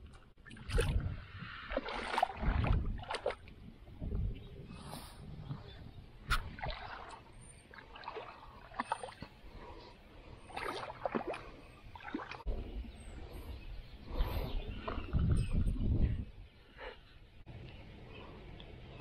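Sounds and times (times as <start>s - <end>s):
water noise: 0.0s - 16.4s
wind on microphone: 0.6s - 7.0s, 12.4s - 16.5s.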